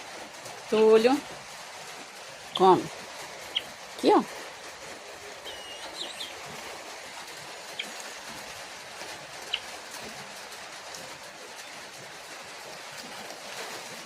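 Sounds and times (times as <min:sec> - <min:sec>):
background hiss: 0:00.0 - 0:14.0
bird chirping: 0:03.5 - 0:03.8, 0:05.4 - 0:06.6, 0:07.7 - 0:08.0, 0:09.4 - 0:09.7.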